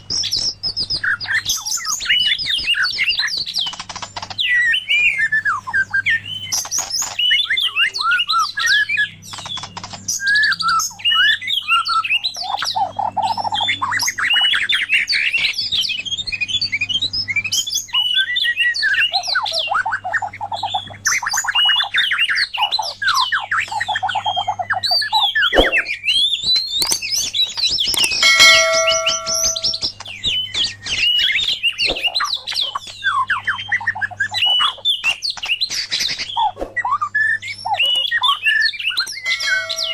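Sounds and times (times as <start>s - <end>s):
songbirds singing whistled phrases: 0.0s - 39.9s.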